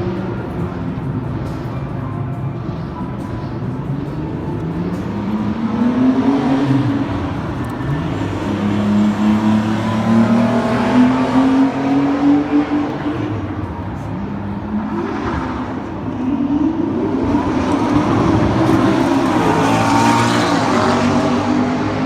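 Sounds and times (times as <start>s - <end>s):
car engine accelerating: 2.6s - 22.0s.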